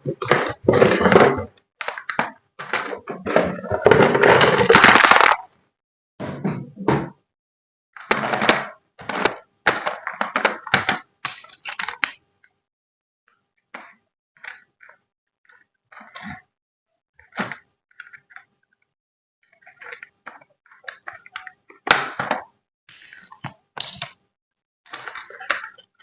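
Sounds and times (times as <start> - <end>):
objects knocking and clattering: 0.0 - 5.5.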